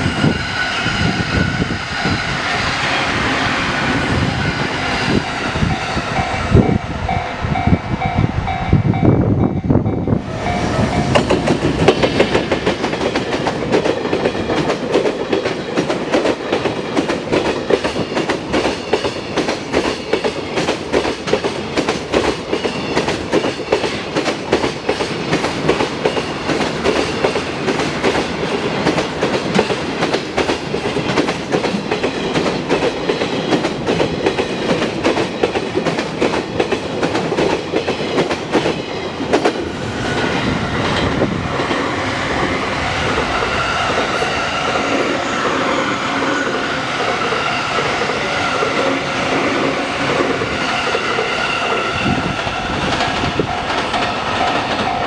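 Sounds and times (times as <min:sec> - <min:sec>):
train rumble: 0:00.0 - 0:55.0
train wheels clacking over rail joints: 0:10.4 - 0:55.0.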